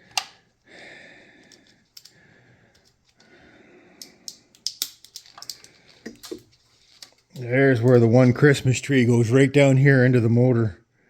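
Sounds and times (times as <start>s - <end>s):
plastic harness rustling: 1.4s - 3.3s, 4.5s - 8.5s.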